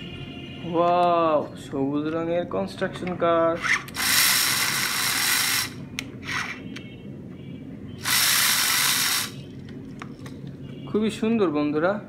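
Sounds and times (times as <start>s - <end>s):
toy vehicle wheels whirring: 3.6s - 6.6s, 8.0s - 9.4s.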